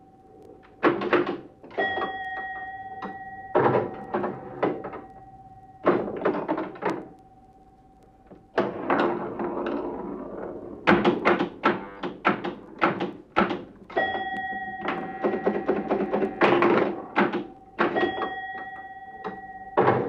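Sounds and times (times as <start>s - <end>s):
pinball mechanical clicks and knocks: 0.6s - 7.2s, 8.3s - 20.0s
bell-like ringing tones: 1.7s - 8.6s, 13.9s - 20.0s.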